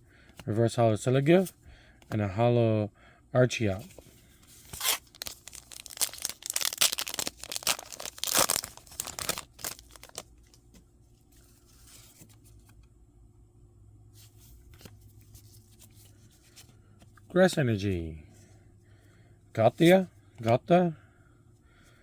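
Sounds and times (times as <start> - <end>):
faint low hum: 0.0 - 22.0
foil wrapper tearing and crinkling: 4.7 - 10.3.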